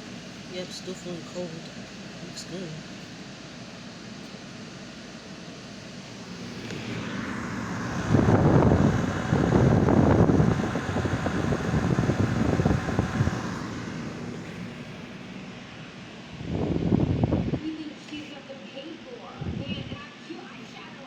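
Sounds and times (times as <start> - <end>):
air conditioner humming: 0.0 - 21.0
air stream buffeting microphone: 6.1 - 17.7, 19.4 - 20.0.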